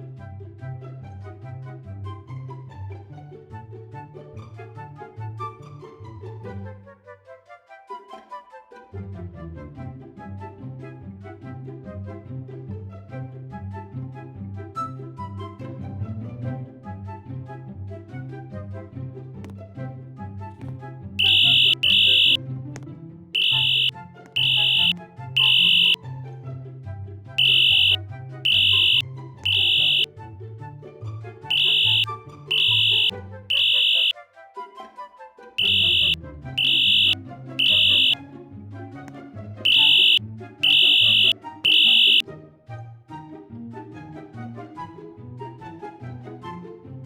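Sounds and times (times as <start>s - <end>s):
fire alarm horn blasts: 21.2s - 22.4s, 23.4s - 26.0s, 27.4s - 30.1s, 31.5s - 34.1s, 35.6s - 38.2s, 39.7s - 42.2s
background music: 27.4s - 47.0s.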